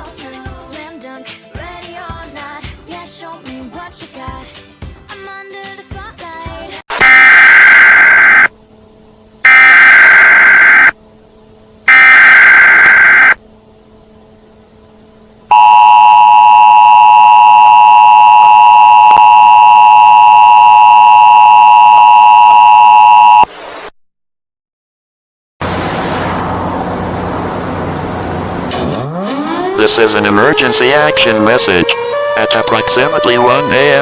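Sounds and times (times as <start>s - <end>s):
screeching digital data bursts: 7.0s - 8.5s, 9.5s - 11.0s, 11.9s - 13.4s
two-tone attention signal: 7.0s - 8.5s, 9.5s - 10.9s, 11.9s - 13.4s, 15.5s - 23.5s.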